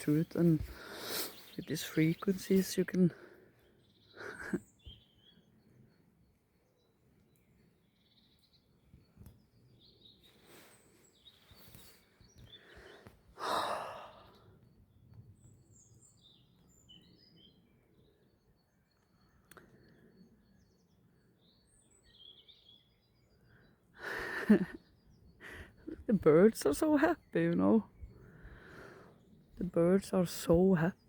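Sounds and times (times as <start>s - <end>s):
songbird chirps: 0.0s - 31.0s
person sighing: 13.4s - 14.3s.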